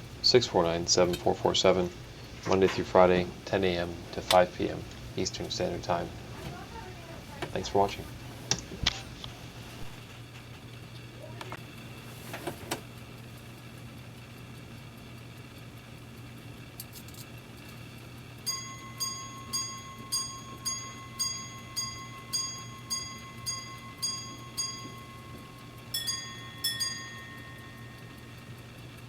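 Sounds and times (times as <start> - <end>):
pocket watch striking gongs: 18.4 - 29.0.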